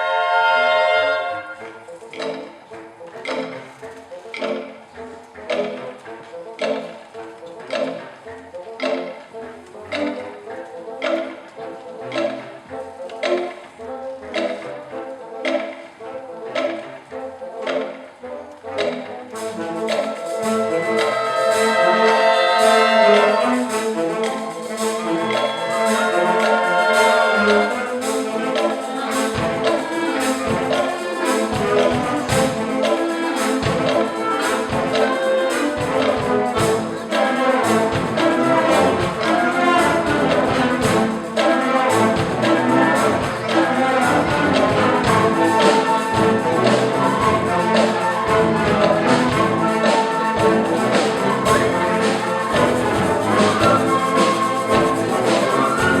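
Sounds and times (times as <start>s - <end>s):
orchestral brass music: 0.0s - 56.0s
steady beat: 19.4s - 56.0s.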